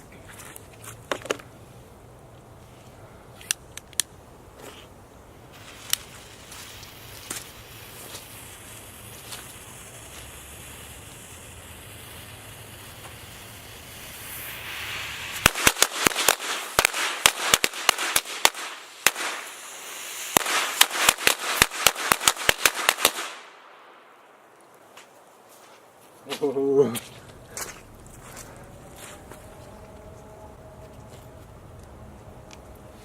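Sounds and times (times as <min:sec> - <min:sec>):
fuse hissing: 0:05.5 - 0:17.6, 0:18.4 - 0:21.7
firecrackers cracking: 0:05.5 - 0:25.4.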